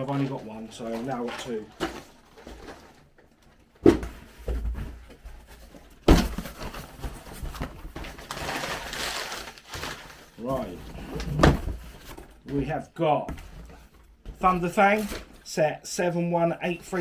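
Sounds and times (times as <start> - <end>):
cardboard box thumps: 3.8 - 5.0, 6.0 - 8.1.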